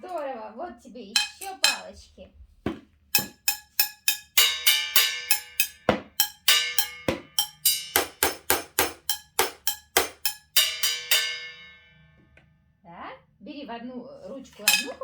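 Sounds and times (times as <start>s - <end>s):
drum hits with sticks: 2.7s - 11.6s.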